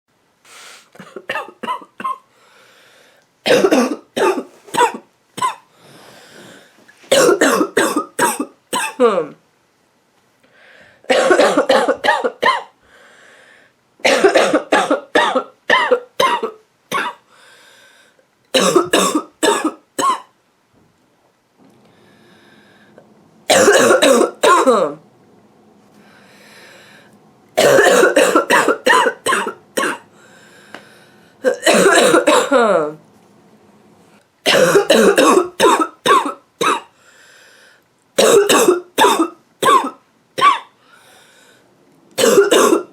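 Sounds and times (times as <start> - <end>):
woman coughing harshly: 1.0 - 2.3, 3.5 - 5.7, 7.1 - 9.4, 11.1 - 12.8, 14.0 - 17.2, 18.6 - 20.3, 23.5 - 25.0, 27.6 - 30.1, 31.4 - 33.0, 34.5 - 36.9, 38.2 - 40.8, 42.2 - 42.9.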